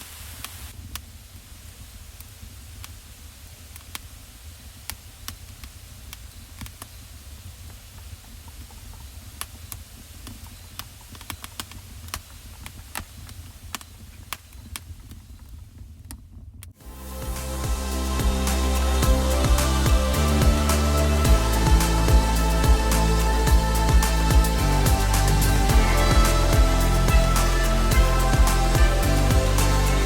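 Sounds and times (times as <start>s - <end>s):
sharp clicks and crackles: 4.8s - 16.8s
low steady rumble: 16.8s - 30.0s.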